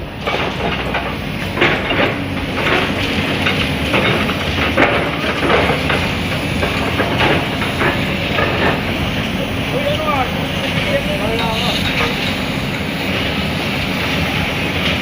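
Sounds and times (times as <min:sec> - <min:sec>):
backhoe engine rumbling: 0:00.0 - 0:15.0
concrete breaking knocks and crunches: 0:00.3 - 0:08.9.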